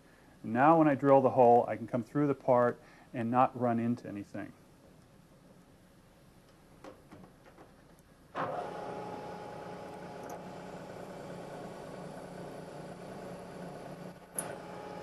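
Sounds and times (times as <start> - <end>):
milling machine humming and whining: 8.5 - 15.0.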